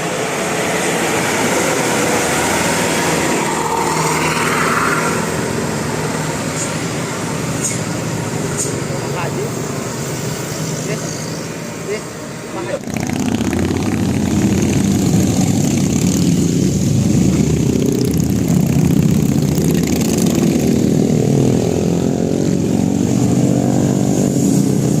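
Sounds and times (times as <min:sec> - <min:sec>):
vehicle engine revving: 0:12.6 - 0:25.0.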